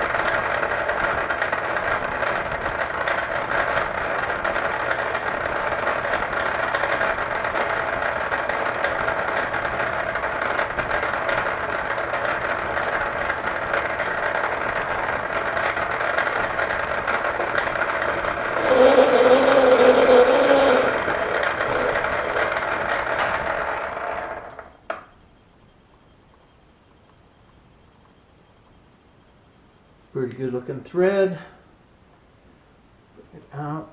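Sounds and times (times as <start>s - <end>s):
metal lathe cutting a thread: 0.0s - 25.1s.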